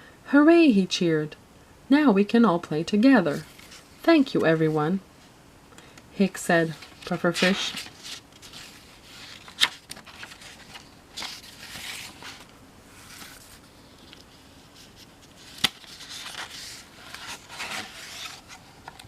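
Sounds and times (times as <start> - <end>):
book pages rustling: 3.3 - 4.8, 6.6 - 19.0.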